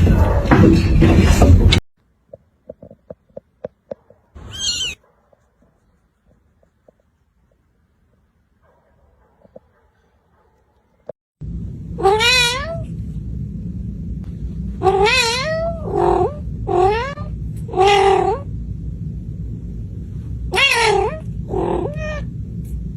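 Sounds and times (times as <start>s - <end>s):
low background hum: 0.0s - 22.9s
kitten meowing: 4.4s - 5.0s.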